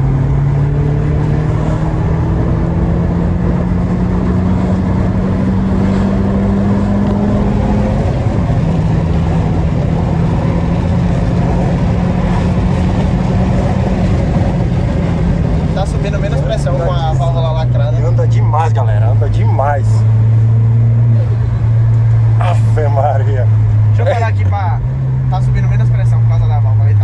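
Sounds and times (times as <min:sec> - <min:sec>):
car engine pulling: 0:00.0 - 0:27.0
road and wind noise: 0:00.0 - 0:27.0.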